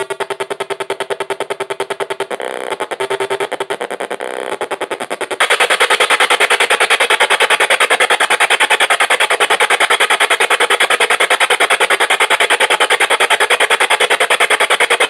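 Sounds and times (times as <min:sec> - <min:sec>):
harsh distorted noise music: 0:05.2 - 0:15.0.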